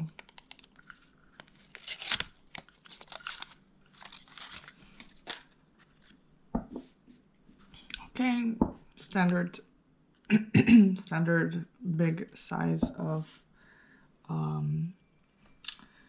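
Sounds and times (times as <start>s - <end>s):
thick paper rustling and scraping: 0.0s - 6.2s.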